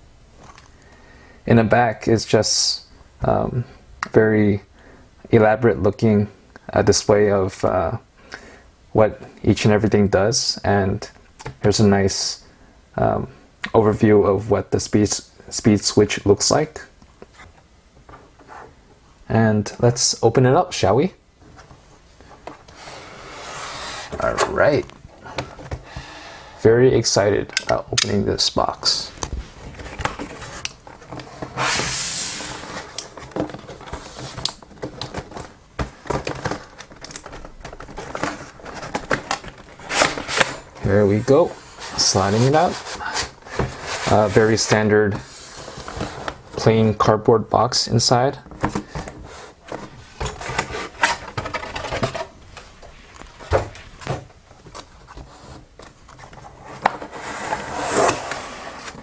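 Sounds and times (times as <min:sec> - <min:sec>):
cardboard sliding scrape: 0:22.6 - 0:24.8, 0:29.4 - 0:34.4, 0:39.8 - 0:46.6, 0:55.0 - 0:59.0.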